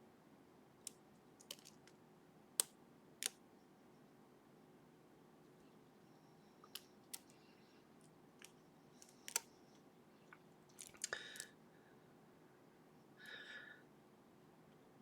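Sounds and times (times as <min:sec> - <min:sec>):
lock pick clicking on pins: 0:01.4 - 0:01.9, 0:09.0 - 0:09.5.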